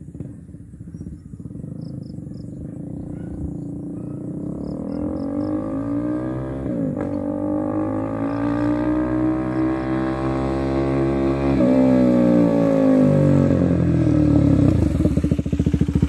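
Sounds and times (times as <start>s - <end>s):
motorcycle engine accelerating: 0.0s - 16.0s
high insect chirps: 0.2s - 5.8s.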